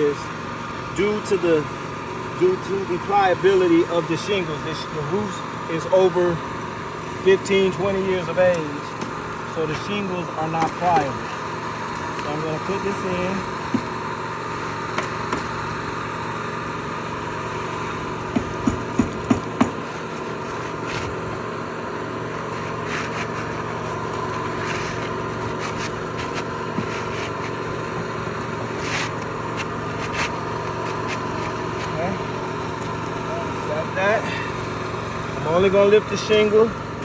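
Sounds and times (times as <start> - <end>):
steady engine drone: 0.0 - 37.0
shingle scraping and rubbing: 17.5 - 33.3.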